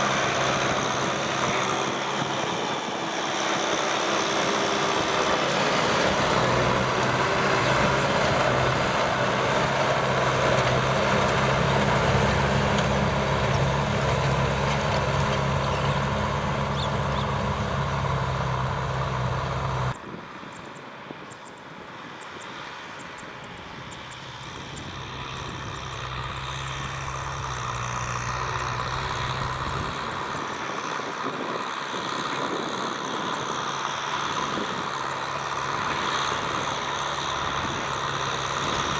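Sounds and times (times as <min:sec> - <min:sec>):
tractor diesel engine running: 0:00.0 - 0:20.0, 0:23.0 - 0:38.9.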